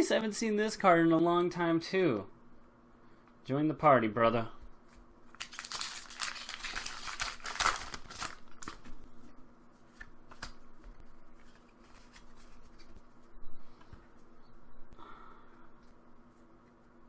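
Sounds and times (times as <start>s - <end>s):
cards rustling and clicking: 4.9s - 9.1s, 9.9s - 13.0s
foil wrapper crinkling and tearing: 5.3s - 8.9s.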